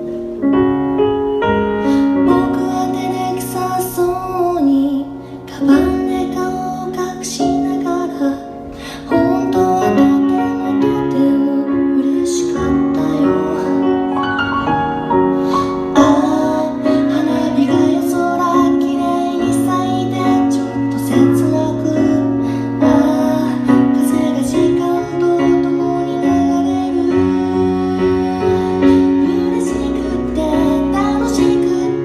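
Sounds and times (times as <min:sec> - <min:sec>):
piano and band accompaniment: 0:00.0 - 0:32.0
person singing: 0:01.8 - 0:32.0.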